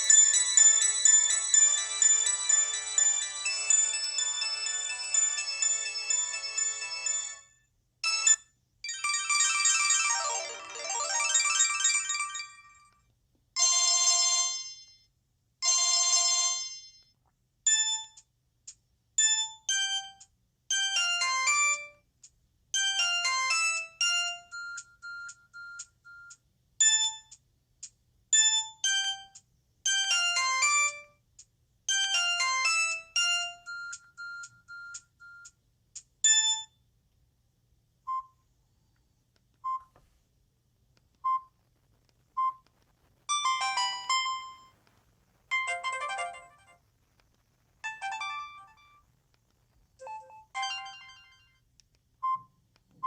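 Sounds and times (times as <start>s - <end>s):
beeping ringtone melody: 0.0s - 12.8s, 45.5s - 46.8s, 47.8s - 49.0s, 50.0s - 51.6s.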